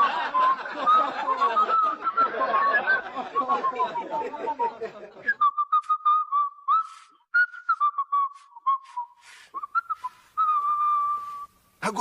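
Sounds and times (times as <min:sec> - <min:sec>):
person whistling a tune: 0:05.2 - 0:11.6
brief hiss-like noises: 0:08.8 - 0:10.4.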